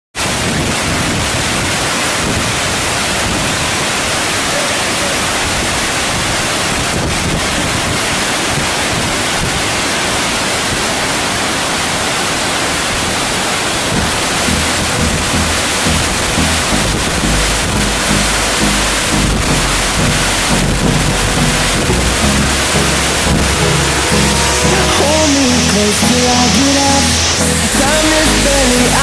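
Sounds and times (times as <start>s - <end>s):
waterfall roaring: 0.2s - 29.0s.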